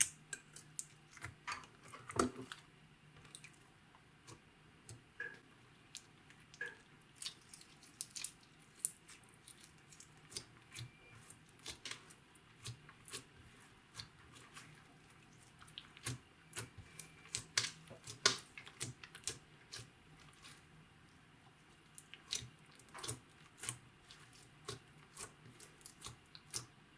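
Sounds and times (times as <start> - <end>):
slime sticky clicks and wet pops: 15.7 - 19.9.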